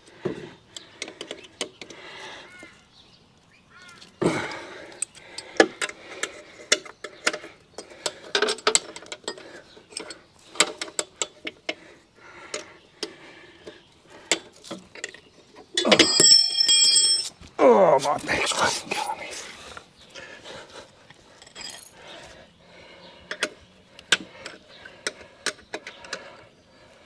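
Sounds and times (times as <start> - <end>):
hand tools and metal parts clinking: 0.4 - 2.0, 3.7 - 11.8, 12.5 - 19.2, 21.0 - 22.4, 23.2 - 26.5.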